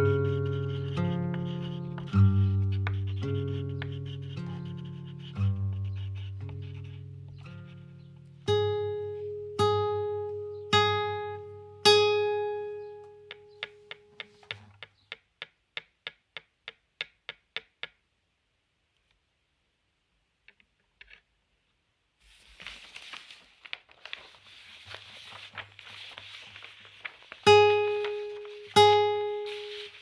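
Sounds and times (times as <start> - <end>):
rustling and scratching: 0.1 - 7.5, 22.2 - 30.0
sharp evenly spaced taps: 13.3 - 18.0.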